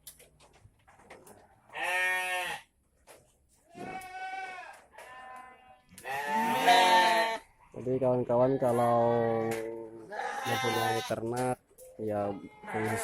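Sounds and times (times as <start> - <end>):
goats bleating: 1.7 - 2.7, 3.7 - 7.5, 8.4 - 11.3, 12.1 - 13.0.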